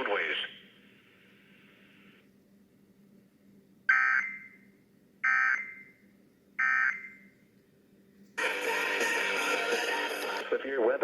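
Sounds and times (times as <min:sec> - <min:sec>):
music: 0:08.4 - 0:10.5.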